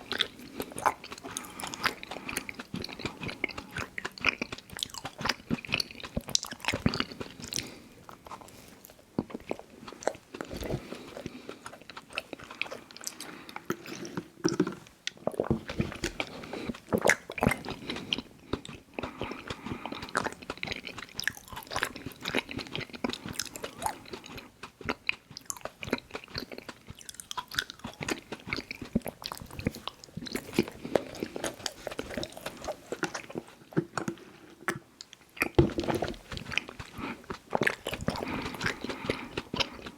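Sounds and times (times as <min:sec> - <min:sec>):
person chewing with wet smacks: 0:00.0 - 0:39.9.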